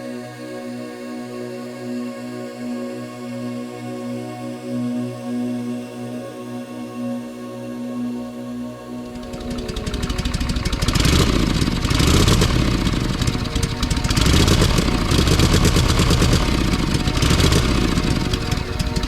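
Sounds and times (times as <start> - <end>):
motorcycle engine running: 9.0 - 19.0.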